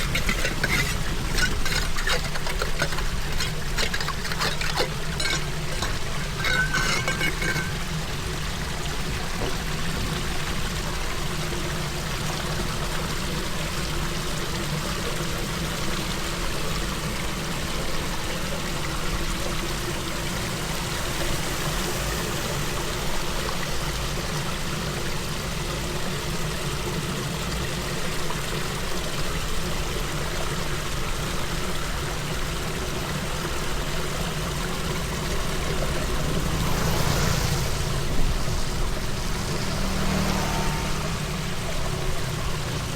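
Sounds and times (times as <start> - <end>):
floodwater rushing: 0.0 - 11.4, 33.8 - 42.9.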